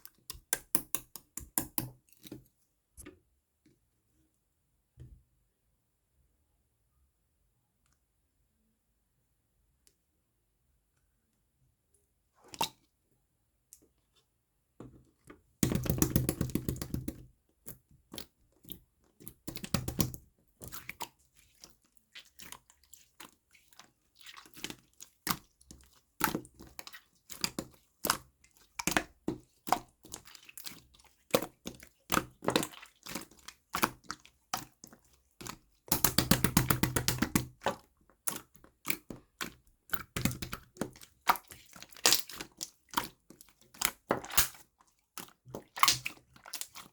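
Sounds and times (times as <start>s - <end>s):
slime squished by hand: 19.3s - 46.9s.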